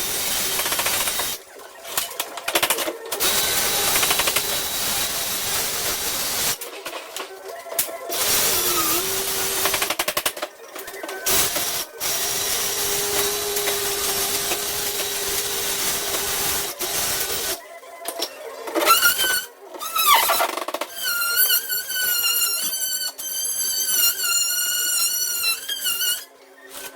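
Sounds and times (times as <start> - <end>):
power tool running: 3.2 - 6.6, 8.2 - 10.0, 11.3 - 17.6.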